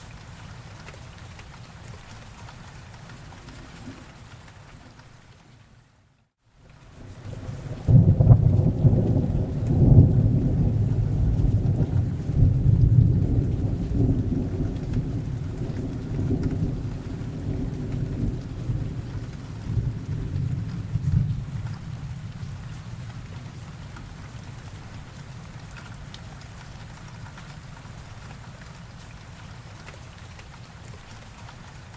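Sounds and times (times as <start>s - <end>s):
steady rainfall: 0.0s - 31.9s
rolling thunder: 7.0s - 23.9s.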